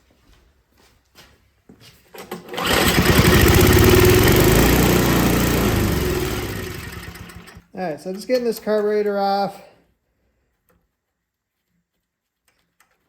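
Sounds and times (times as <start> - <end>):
engine clicks: 2.3 - 8.8
small engine running loudly: 2.6 - 7.6.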